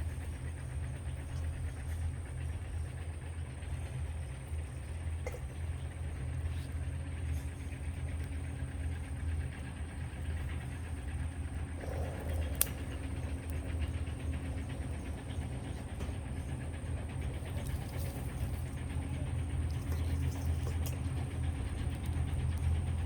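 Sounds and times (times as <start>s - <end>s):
low rumble: 5.7s - 23.0s
wood fire crackling: 6.0s - 23.0s.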